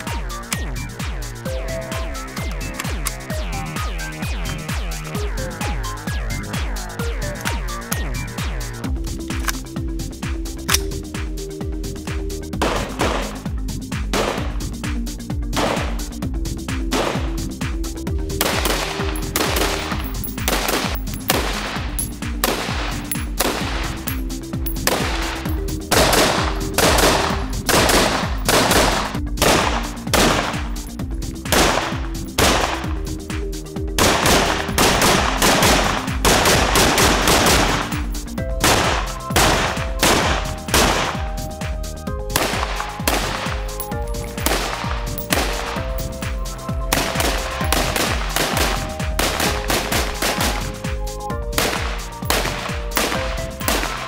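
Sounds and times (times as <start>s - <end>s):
background music with held notes: 0.0s - 54.0s
rifle firing rapid shots: 24.8s - 30.7s, 31.5s - 32.8s, 34.0s - 38.0s, 47.0s - 50.6s, 51.6s - 54.0s.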